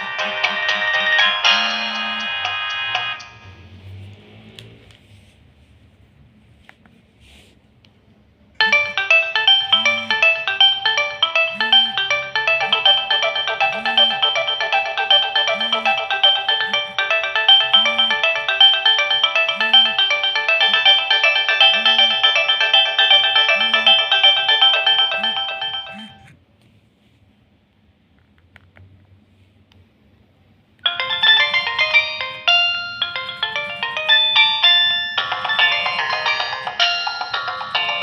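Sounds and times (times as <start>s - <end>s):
electronic phone ringtone melody: 0.0s - 3.7s, 8.6s - 26.3s, 30.8s - 38.0s.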